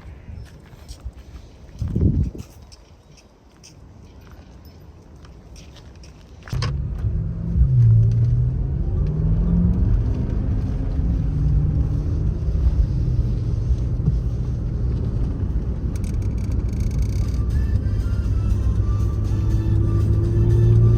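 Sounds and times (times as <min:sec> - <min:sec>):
car engine revving: 0:06.5 - 0:20.9.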